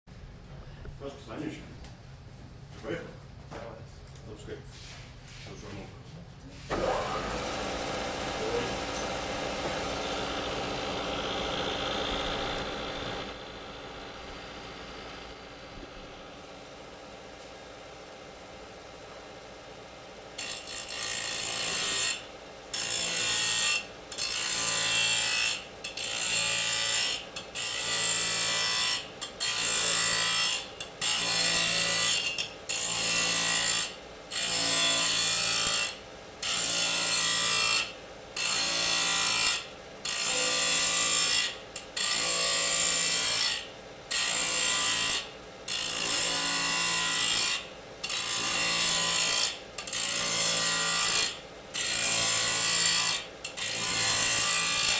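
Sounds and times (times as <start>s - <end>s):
saw blade screeching through metal: 20.4s - 54.9s.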